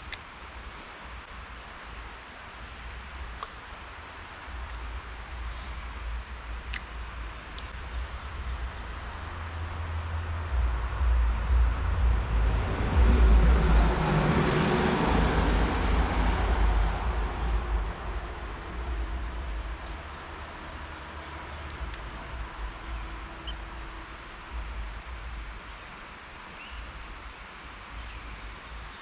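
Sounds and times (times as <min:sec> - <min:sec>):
motor vehicle driving past: 0:09.6 - 0:25.2.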